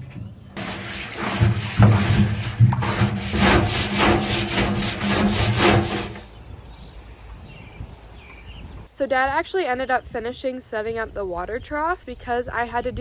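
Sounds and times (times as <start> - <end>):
rhythmic tool scraping: 0.6 - 6.3.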